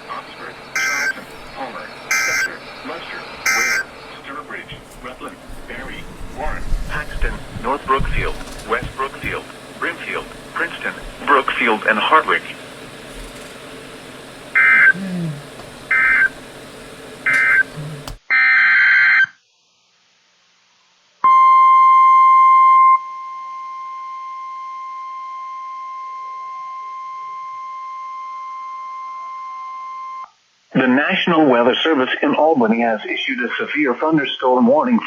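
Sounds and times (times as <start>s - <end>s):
warbling data bursts: 0.0s - 15.0s, 15.9s - 16.4s
radio static: 0.0s - 18.2s
steady single-pitch alarm tone: 0.6s - 4.2s, 14.5s - 15.0s, 15.9s - 16.4s, 17.2s - 19.2s, 21.2s - 30.3s.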